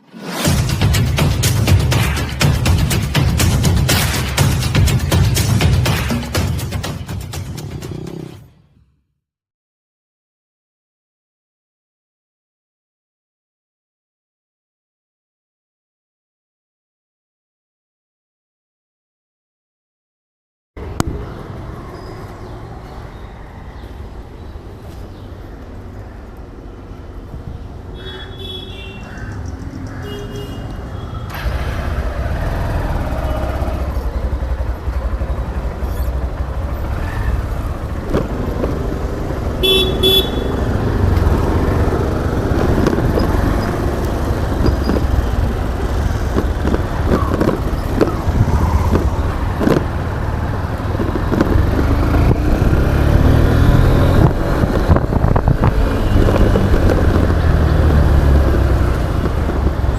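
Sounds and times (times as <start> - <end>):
motorcycle engine rumble: 20.8 - 59.9
vehicle horn toot: 28.0 - 29.0, 30.0 - 31.4, 39.6 - 40.9
wind buffeting: 31.4 - 59.9.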